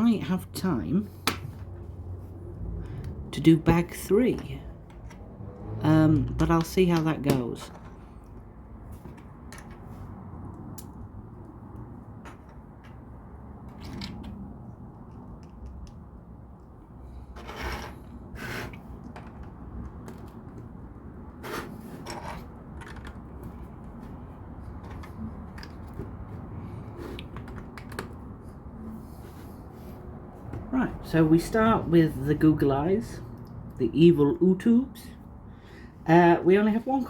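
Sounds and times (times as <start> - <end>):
rustling scrapes of objects handled: 21.4 - 22.6.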